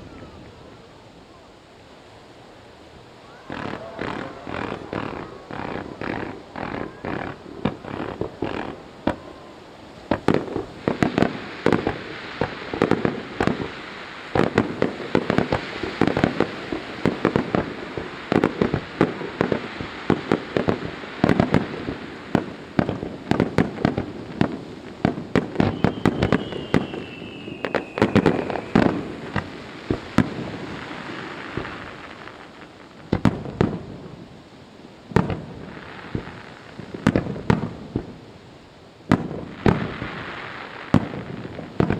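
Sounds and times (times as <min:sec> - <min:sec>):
fireworks bursts and crackling: 0:00.0 - 0:41.9
falling firework whistle: 0:03.2 - 0:32.5.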